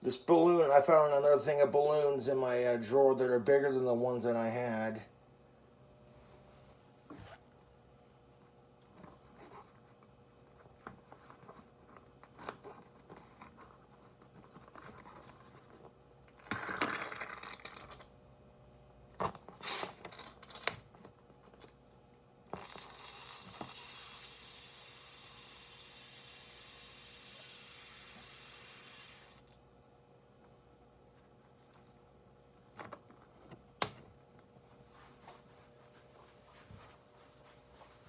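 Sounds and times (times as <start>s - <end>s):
steady hiss: 22.8s - 29.4s.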